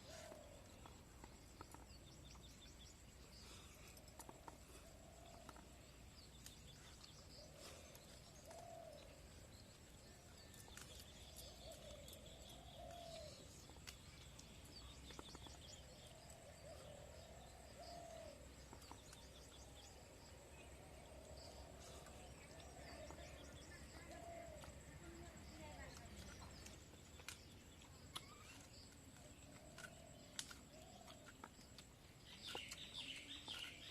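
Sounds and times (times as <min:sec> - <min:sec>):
bird cooing: 0:00.0 - 0:00.7, 0:08.4 - 0:09.0, 0:17.6 - 0:18.4
faint chirps and ticks: 0:00.0 - 0:33.9.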